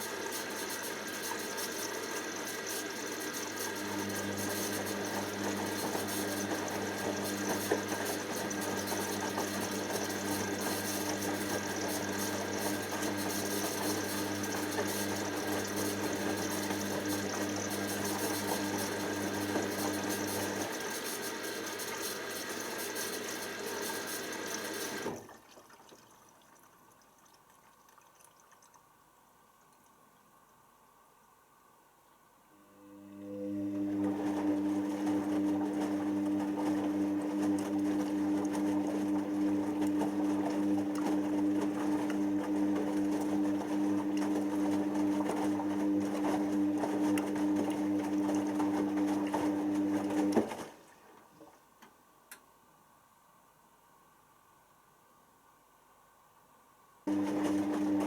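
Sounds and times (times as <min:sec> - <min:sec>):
washing machine motor hum: 0:00.0 - 0:25.6, 0:32.7 - 0:51.2, 0:57.1 - 0:58.0
water rushing in washing machine: 0:00.0 - 0:28.8, 0:33.2 - 0:51.6, 0:57.1 - 0:58.0.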